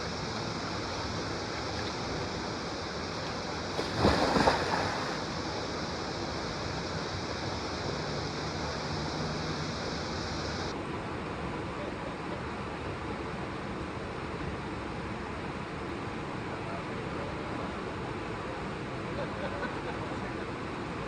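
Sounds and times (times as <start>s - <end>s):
flowing water rushing: 0.0s - 10.7s.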